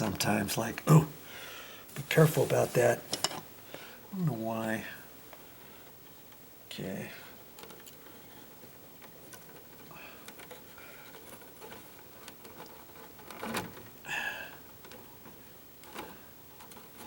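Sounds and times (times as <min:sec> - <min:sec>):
wires bending clicks and rustles: 0:01.9 - 0:03.5, 0:07.3 - 0:17.0.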